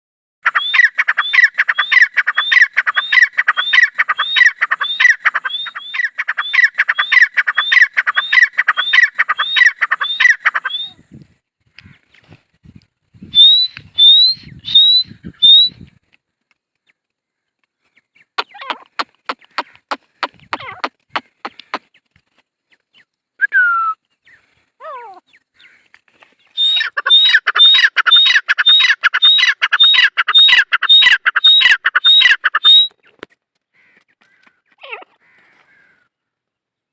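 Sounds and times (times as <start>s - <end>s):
bird rising whistled calls: 0.5s - 11.1s, 13.2s - 15.9s, 26.4s - 33.1s
bird sharp clicking notes: 18.4s - 21.9s.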